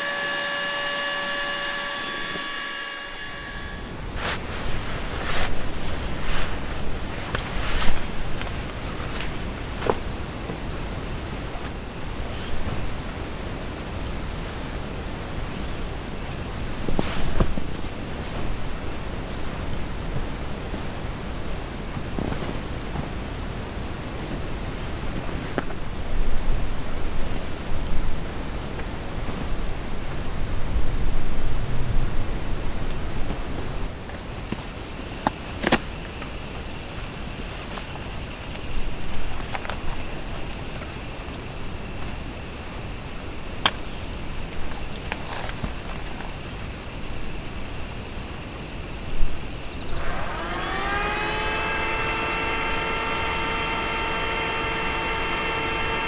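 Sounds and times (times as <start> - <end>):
small motor whine: 0.0 - 10.6, 49.8 - 56.0
high-pitched insect trill: 0.0 - 56.0.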